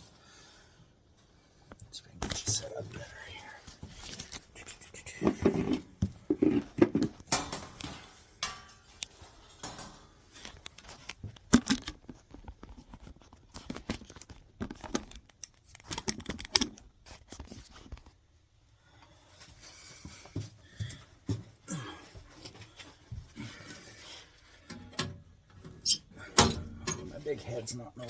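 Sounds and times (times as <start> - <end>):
hands handling parts: 3.8 - 18.3.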